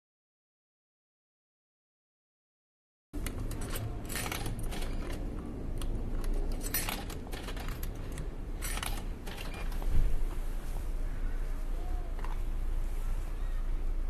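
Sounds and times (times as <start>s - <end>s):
metallic clinks and coin rattles: 3.2s - 5.4s, 6.1s - 9.9s
vending machine hum: 3.2s - 14.0s.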